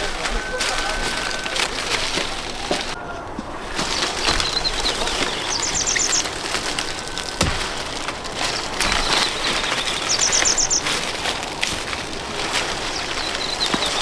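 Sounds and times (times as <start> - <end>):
rustling noise: 0.0 - 14.0
small bird chirping: 4.0 - 11.2, 12.8 - 14.0.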